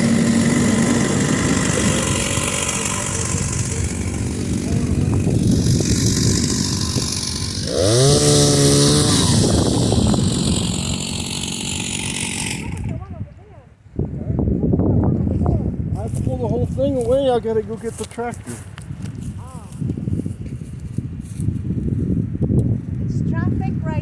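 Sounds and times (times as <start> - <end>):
chainsaw engine revving: 0.0 - 13.0.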